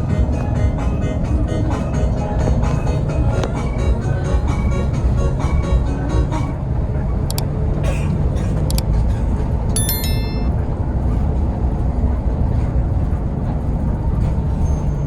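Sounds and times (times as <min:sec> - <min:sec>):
bus engine rumble: 0:00.0 - 0:15.0
faint high chirping tones: 0:09.8 - 0:10.5.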